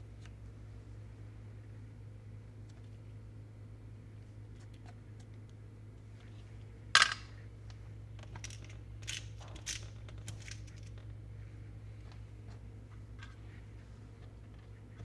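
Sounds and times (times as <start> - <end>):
steady low hum: 0.0 - 15.0
hardware clattering: 7.0 - 7.4
small nuts clicking and tapping: 7.0 - 11.2.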